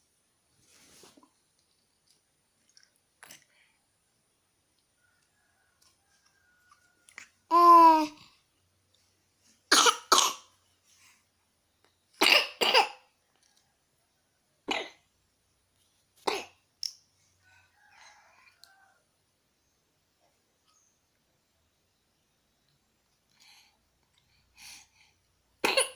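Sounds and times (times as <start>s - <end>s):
young child coughing: 9.7s - 10.4s, 12.2s - 13.0s, 25.6s - 25.9s.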